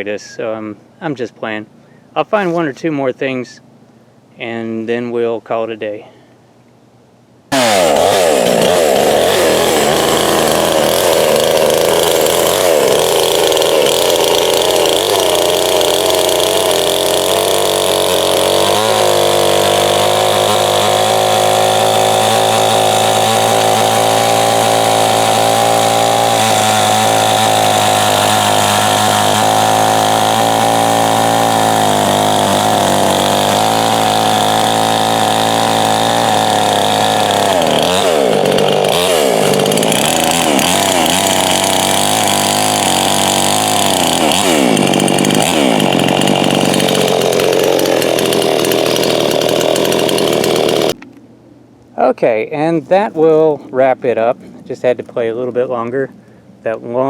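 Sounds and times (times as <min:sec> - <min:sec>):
chainsaw cutting wood: 0:07.5 - 0:51.0.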